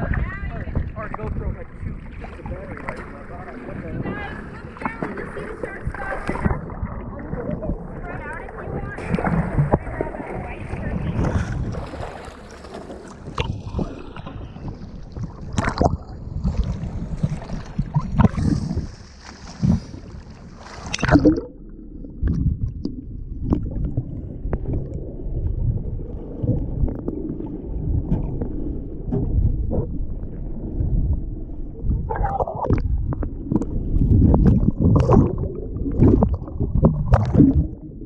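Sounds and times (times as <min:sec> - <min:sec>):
sea water splashing: 0:00.0 - 0:38.0
underwater gurgling: 0:00.0 - 0:38.0
dull underwater thumps: 0:08.7 - 0:38.0.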